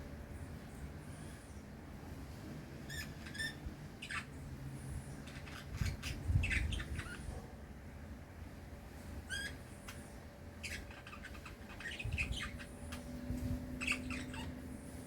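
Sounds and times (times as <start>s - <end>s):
birds giving harsh calls: 5.2s - 7.3s, 9.3s - 15.0s.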